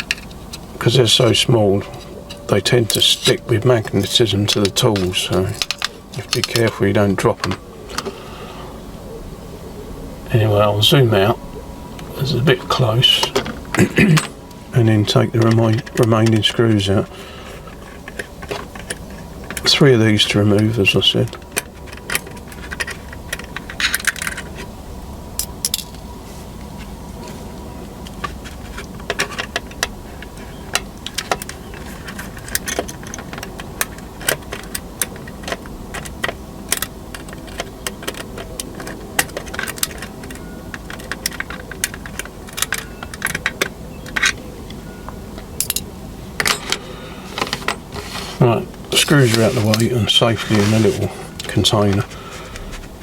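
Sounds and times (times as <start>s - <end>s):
loose screws handled: 0.0s - 8.1s, 15.0s - 24.7s, 28.1s - 44.4s, 46.4s - 53.0s.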